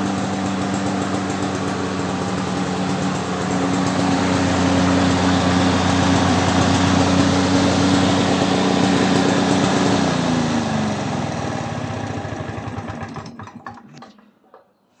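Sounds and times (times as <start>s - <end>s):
two-stroke lawnmower engine: 0.0s - 14.2s.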